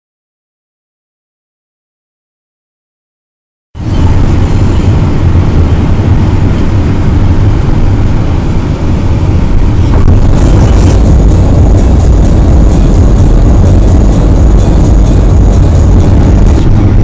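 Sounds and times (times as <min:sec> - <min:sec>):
vehicle rumble on road: 0:03.8 - 0:17.0.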